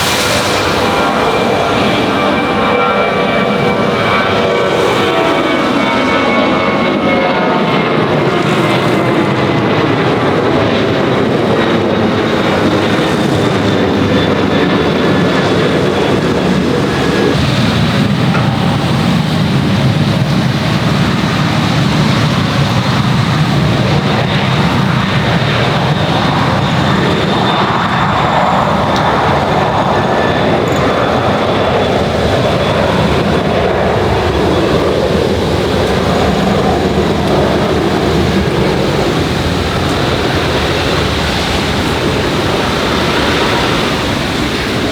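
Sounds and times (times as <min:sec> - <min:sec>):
faint falling whine: 0:00.0 - 0:06.6
jet airliner rushing: 0:00.0 - 0:44.9.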